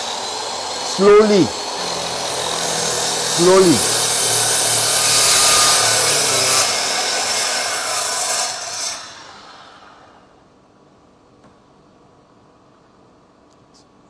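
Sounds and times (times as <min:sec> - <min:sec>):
miter saw cutting wood: 0:00.0 - 0:10.2
saw motor winding down: 0:00.0 - 0:10.2.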